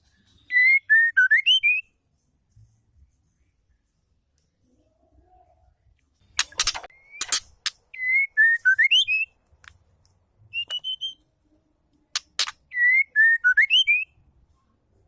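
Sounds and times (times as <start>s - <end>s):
bird whistled phrase: 10.6s - 11.2s, 12.7s - 14.1s.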